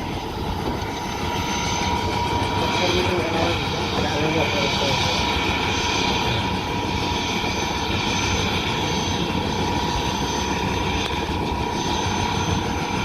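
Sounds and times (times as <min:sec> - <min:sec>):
helicopter rotor and engine: 0:00.0 - 0:13.0
high-pitched whine: 0:00.0 - 0:13.0.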